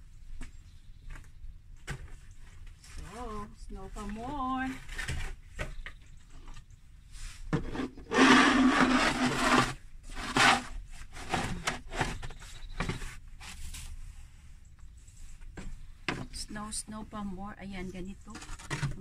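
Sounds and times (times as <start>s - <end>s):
scraping and crunching in snow: 7.6s - 14.2s.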